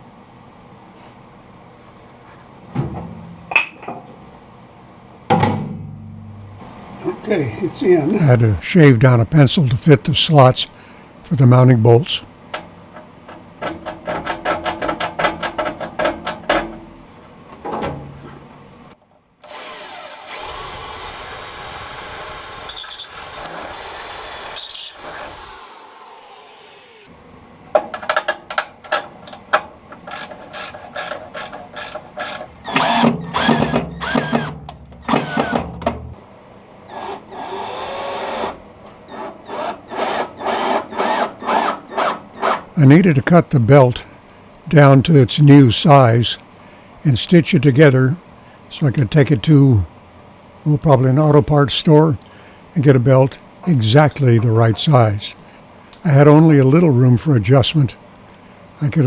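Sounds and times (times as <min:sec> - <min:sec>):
power tool running: 0:19.4 - 0:27.1, 0:31.8 - 0:35.7.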